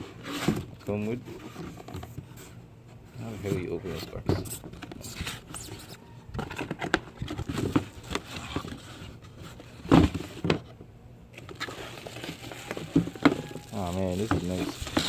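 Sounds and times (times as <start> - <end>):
box being opened by hand: 3.5 - 10.8, 11.4 - 15.0.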